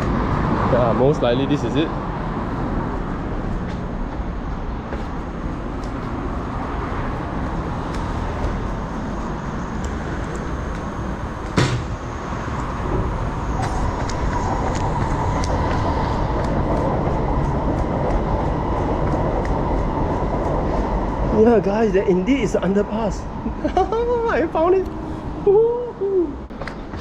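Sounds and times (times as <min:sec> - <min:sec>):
train rumbling: 0:00.0 - 0:27.0
train whine: 0:01.6 - 0:23.5
sharp knock: 0:11.5 - 0:12.0.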